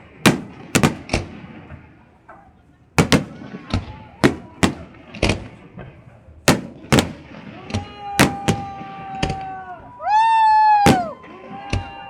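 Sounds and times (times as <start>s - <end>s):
fireworks bangs: 0.0s - 2.0s, 3.0s - 5.7s, 6.4s - 9.5s, 10.8s - 11.7s.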